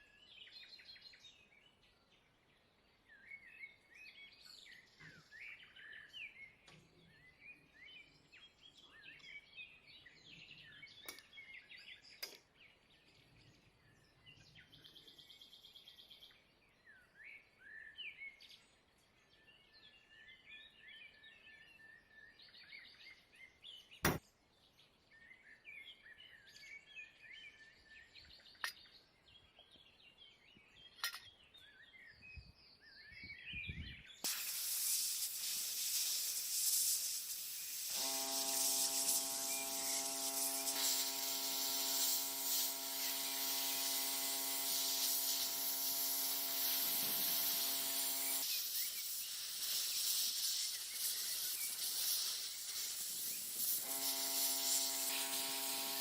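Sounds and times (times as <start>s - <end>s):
paint spraying hiss: 34.2s - 56.0s
steady hum: 37.9s - 48.4s, 53.8s - 56.0s.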